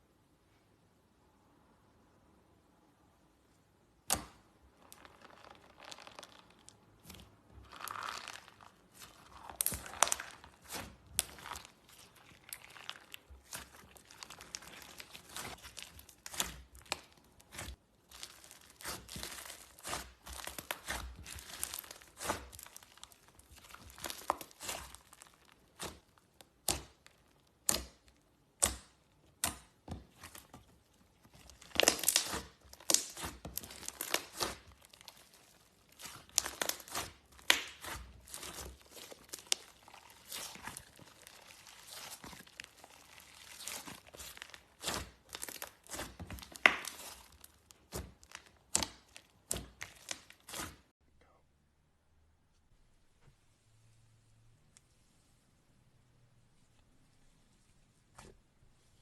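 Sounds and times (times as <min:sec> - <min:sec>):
slime squeezed by hand crackling: 0:04.1 - 0:50.9.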